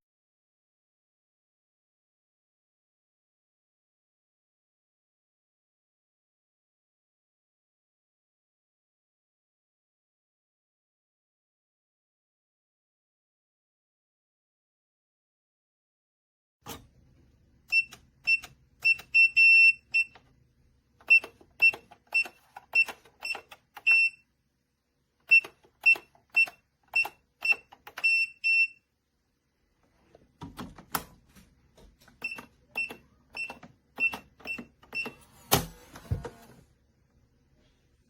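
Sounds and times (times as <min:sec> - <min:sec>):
keypad beeps: 0:17.7 - 0:20.2, 0:21.0 - 0:24.2, 0:25.3 - 0:28.8, 0:32.2 - 0:35.3.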